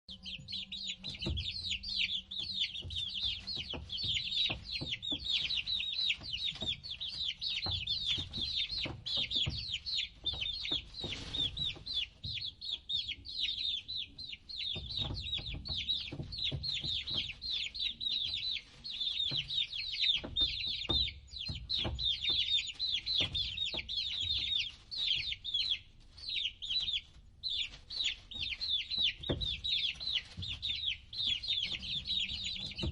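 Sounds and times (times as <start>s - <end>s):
baby chicks peeping: 0.1s - 32.9s
soft knocks: 28.9s - 32.9s.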